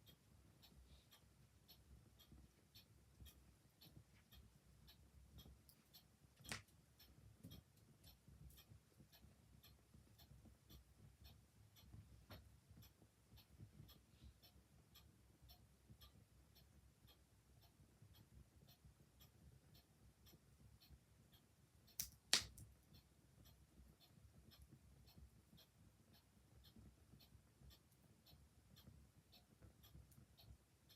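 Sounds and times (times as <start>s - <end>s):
clock ticking: 0.0s - 30.9s
wood fire crackling and popping: 6.5s - 6.7s, 22.0s - 22.7s.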